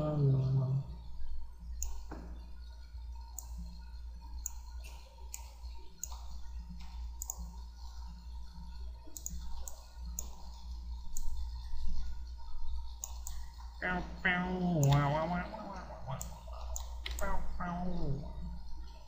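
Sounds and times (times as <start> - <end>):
low electrical hum: 0.0 - 19.0
computer mouse clicking: 1.7 - 2.1, 3.2 - 3.8, 4.4 - 8.2, 9.1 - 11.9, 13.0 - 13.7, 16.1 - 17.4.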